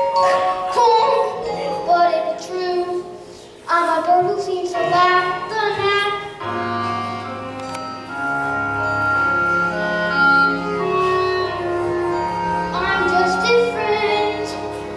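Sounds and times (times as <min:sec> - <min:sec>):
instrumental accompaniment: 0:00.0 - 0:14.9
children singing: 0:12.7 - 0:14.7.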